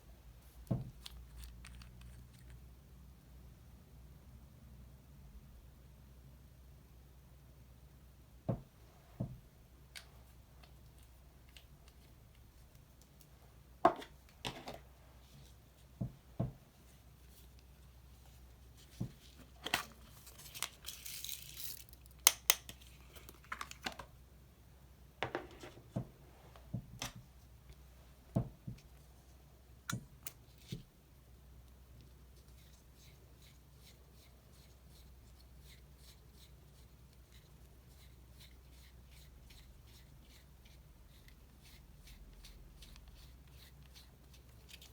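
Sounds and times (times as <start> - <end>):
packaging tearing and crinkling: 20.2 - 22.2.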